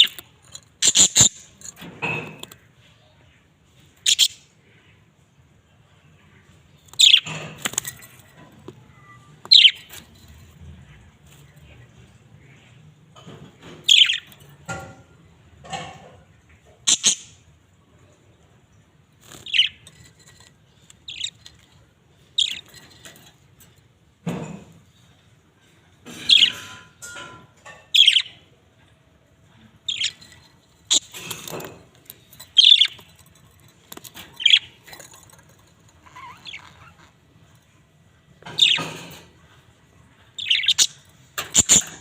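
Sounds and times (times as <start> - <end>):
budgerigars chirping: 4.0 - 4.4, 9.5 - 9.9, 13.9 - 14.3, 16.9 - 17.3, 19.4 - 19.8, 21.0 - 21.6, 22.4 - 22.7, 28.0 - 28.4, 29.9 - 31.5, 32.5 - 33.0, 34.4 - 34.8, 36.1 - 37.1, 40.4 - 41.9.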